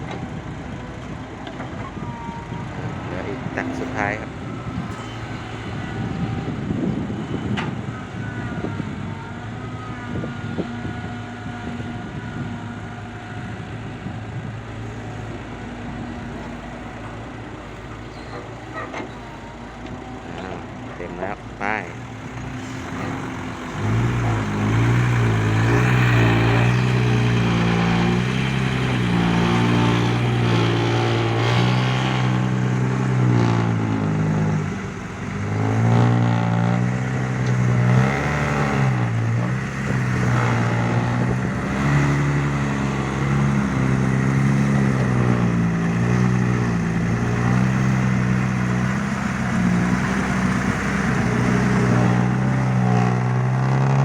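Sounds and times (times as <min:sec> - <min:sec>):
diesel truck engine revving: 0:00.0 - 0:54.0.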